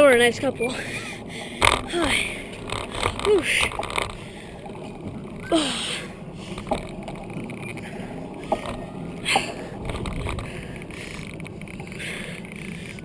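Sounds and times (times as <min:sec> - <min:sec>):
bicycle rumble: 0:00.0 - 0:13.0
wind on microphone: 0:06.2 - 0:13.0
short squeaks: 0:06.6 - 0:13.0.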